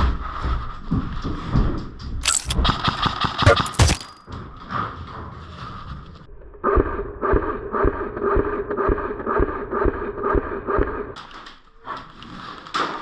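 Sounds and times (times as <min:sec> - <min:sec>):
footsteps walking: 0:03.6 - 0:04.2.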